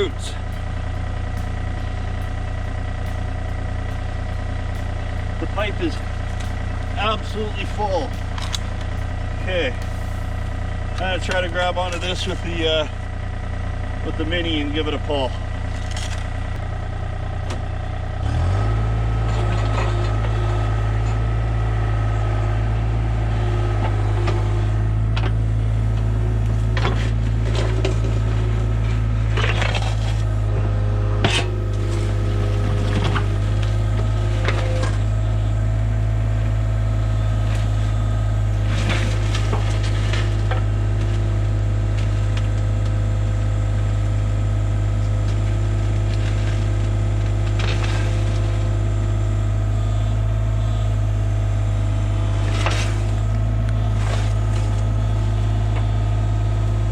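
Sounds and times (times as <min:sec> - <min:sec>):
excavator diesel engine running: 0:00.0 - 0:56.9
cracks and knocks of roots: 0:15.7 - 0:16.7, 0:29.3 - 0:30.3, 0:52.4 - 0:55.9.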